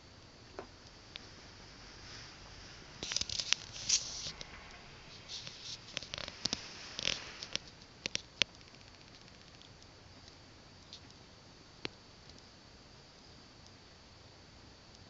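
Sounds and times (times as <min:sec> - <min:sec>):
sharp clicks: 0:03.0 - 0:09.9.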